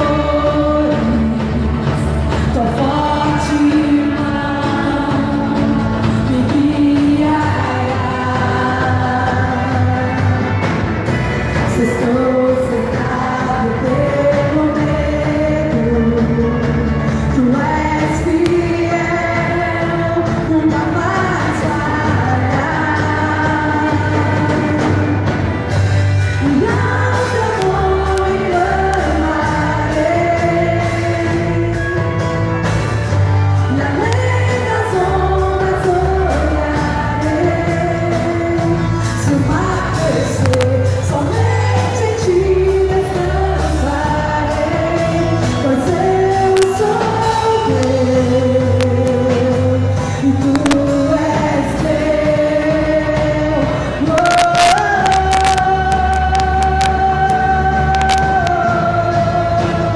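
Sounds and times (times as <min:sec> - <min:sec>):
worship band playing slow song: 0:00.0 - 0:59.9
person singing long notes: 0:33.6 - 0:59.9.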